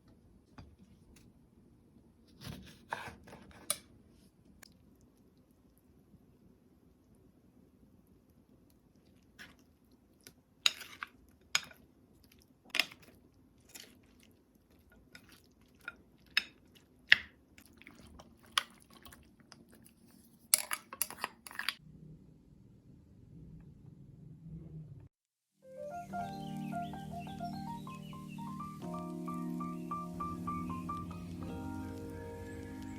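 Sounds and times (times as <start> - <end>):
utensils clinking against dishes: 20.5 - 21.8.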